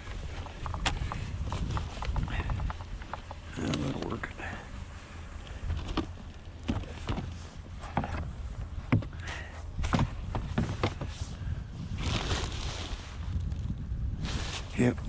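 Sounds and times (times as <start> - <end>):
hard objects knocking and clunking: 0.2 - 4.0.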